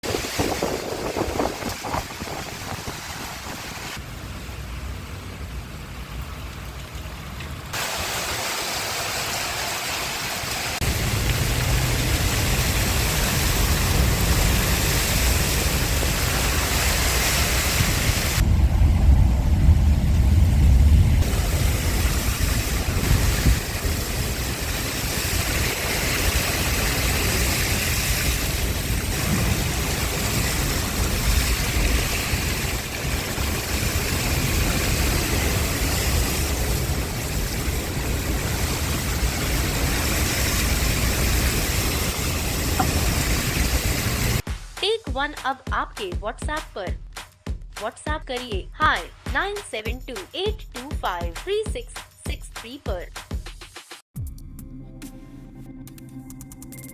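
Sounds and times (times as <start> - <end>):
rain: 0.0 - 44.4
wind: 0.0 - 44.4
traffic noise: 3.9 - 8.2, 9.8 - 16.0.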